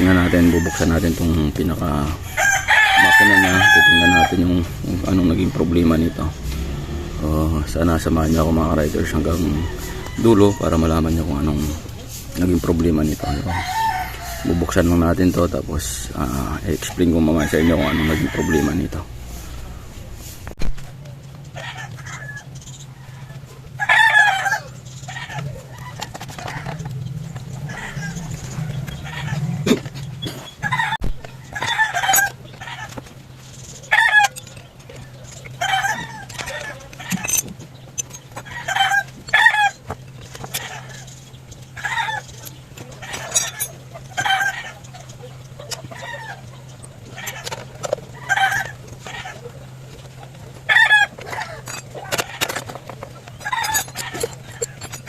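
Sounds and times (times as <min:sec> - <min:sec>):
rooster crowing: 0:00.0 - 0:20.0, 0:23.0 - 0:26.8, 0:27.6 - 0:29.6, 0:30.6 - 0:32.9, 0:33.9 - 0:34.4, 0:35.6 - 0:37.4, 0:38.4 - 0:39.8, 0:48.2 - 0:49.4, 0:50.7 - 0:52.4
chickens clucking: 0:00.0 - 0:20.6, 0:21.2 - 0:55.0
steady low hum: 0:00.0 - 0:21.5.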